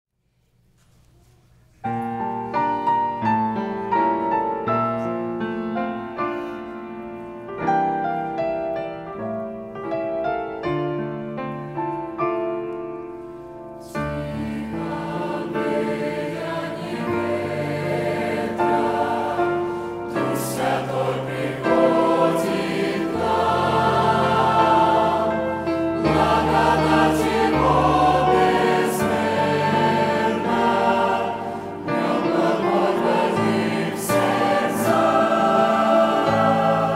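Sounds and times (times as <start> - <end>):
choir singing a hymn: 13.4 - 36.9.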